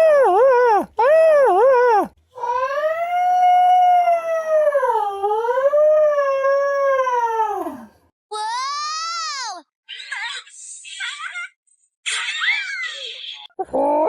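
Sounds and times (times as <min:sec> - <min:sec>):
long howling scream: 0:01.9 - 0:07.9.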